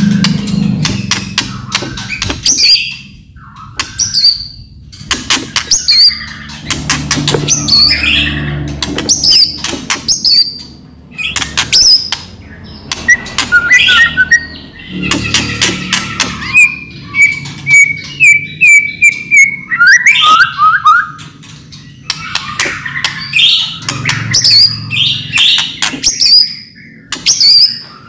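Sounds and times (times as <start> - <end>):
bird song with clicking rattles: 0.0 - 28.0
slurred bird whistles: 13.1 - 14.5.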